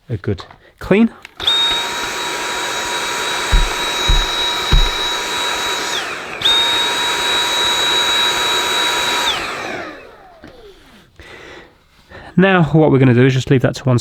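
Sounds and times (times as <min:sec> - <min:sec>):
vacuum cleaner motor whine: 0:01.4 - 0:10.7
dull knocks: 0:03.5 - 0:05.2.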